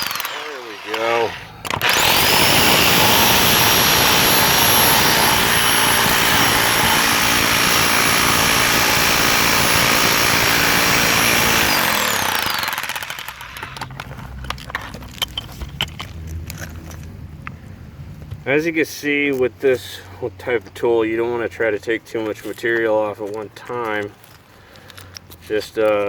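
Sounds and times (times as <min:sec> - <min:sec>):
motor whine spinning down: 0:00.0 - 0:13.3
rotary hammer chiselling concrete: 0:00.0 - 0:14.0.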